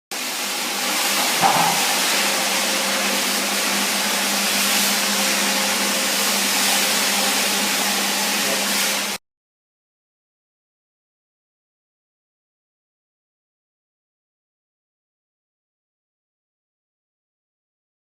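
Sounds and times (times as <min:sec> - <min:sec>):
floor cleaning machine motor: 0:00.2 - 0:09.2.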